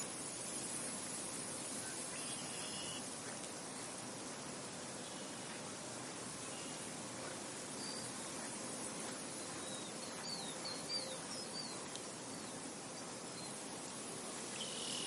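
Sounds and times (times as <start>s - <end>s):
insects: 0.0s - 15.0s
wind hissing: 0.0s - 15.0s
small bird chirping: 7.8s - 13.6s, 14.4s - 15.0s.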